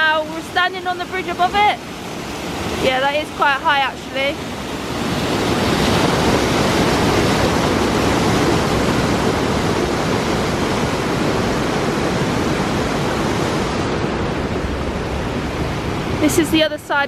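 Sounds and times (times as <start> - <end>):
waterfall rushing: 0.0 - 16.7.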